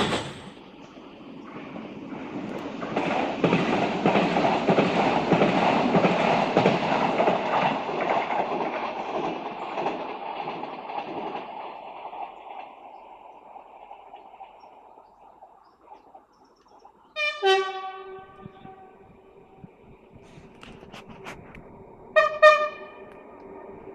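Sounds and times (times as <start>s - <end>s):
train passing on track: 0.0s - 23.9s.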